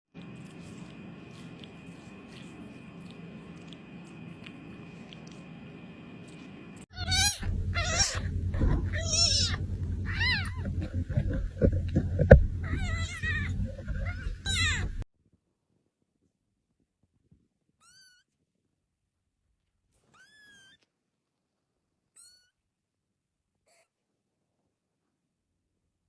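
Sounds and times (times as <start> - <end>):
loud low hum: 5.6 - 15.0
kitten mewing: 6.9 - 11.4, 12.5 - 15.0, 22.2 - 22.6.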